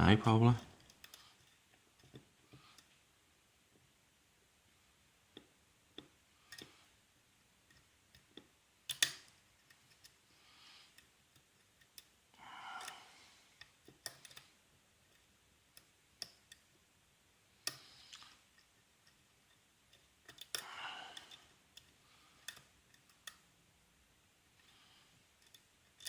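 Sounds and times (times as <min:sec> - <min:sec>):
lock pick metallic clicks: 0:07.7 - 0:10.2, 0:18.6 - 0:20.6, 0:21.2 - 0:23.4.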